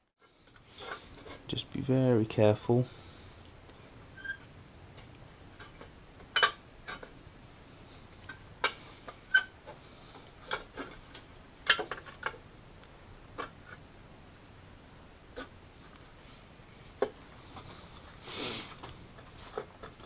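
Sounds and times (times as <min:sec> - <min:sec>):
clicks and knocks of parts: 0:08.1 - 0:12.4.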